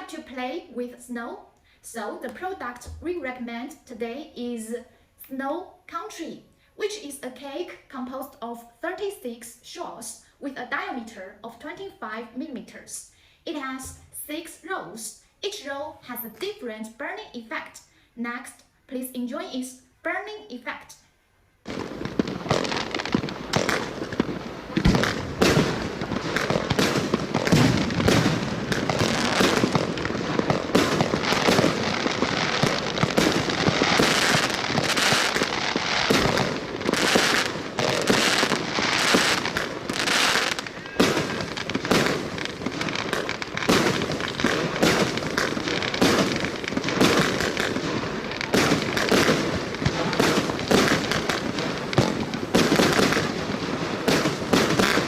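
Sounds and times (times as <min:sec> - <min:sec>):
fireworks launching and bursting: 0:21.6 - 0:55.0.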